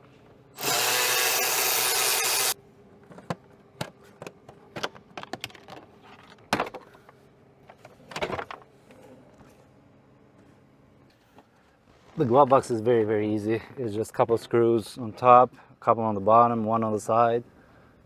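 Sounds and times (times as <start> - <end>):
power driver running: 0.6 - 2.6.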